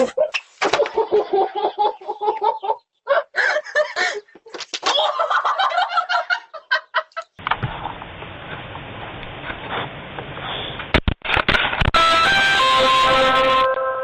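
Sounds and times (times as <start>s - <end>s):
chicken clucking and squawking: 0.0s - 4.2s.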